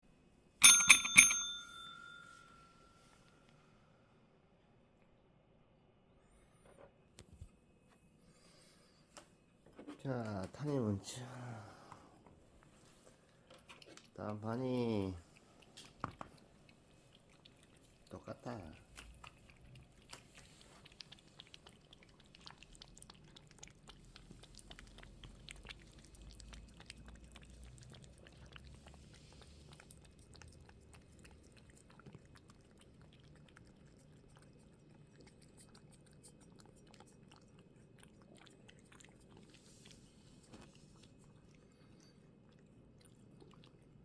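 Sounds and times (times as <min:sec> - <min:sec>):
cats chewing treats: 0:12.9 - 0:44.0.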